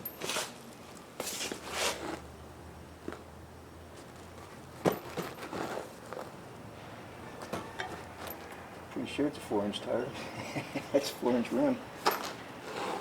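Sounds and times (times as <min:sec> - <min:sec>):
rustling and scraping: 0:00.0 - 0:02.3, 0:03.9 - 0:08.7.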